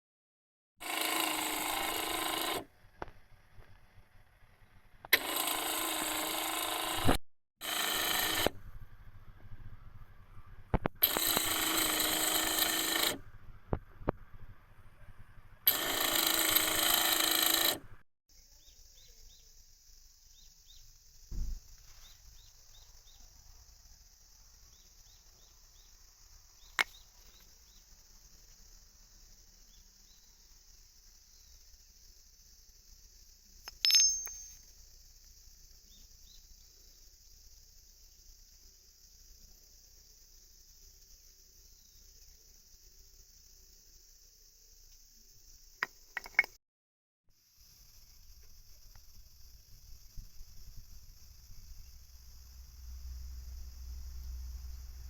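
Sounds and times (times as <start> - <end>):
small chirps: 24.5 - 28.7, 33.5 - 37.2
faint steady hiss: 47.4 - 55.0.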